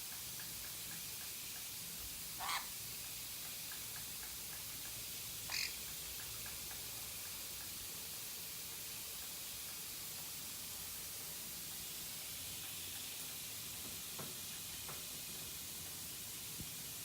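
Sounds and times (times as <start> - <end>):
steady hiss: 0.0 - 17.0
parrot squawks: 2.4 - 2.8, 5.5 - 5.8.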